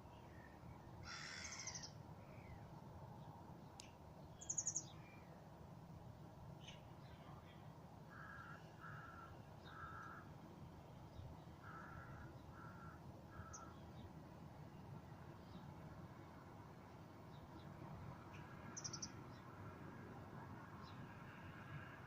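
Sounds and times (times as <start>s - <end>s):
bird calling: 1.1s - 1.9s.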